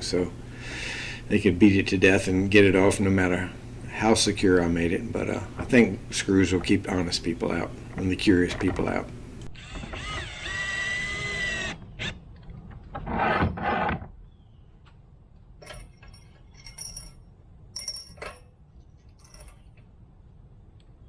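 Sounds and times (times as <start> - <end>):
power drill whine: 9.4 - 12.2
metal hardware clicks and taps: 15.6 - 17.1, 17.8 - 18.5.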